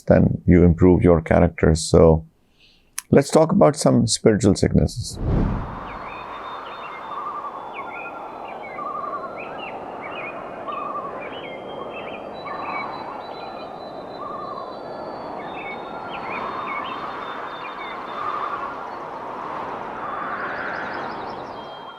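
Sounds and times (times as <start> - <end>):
steady rushing noise: 5.0 - 7.1
low warbling bird call: 5.3 - 18.7
birds chirping: 5.6 - 19.2.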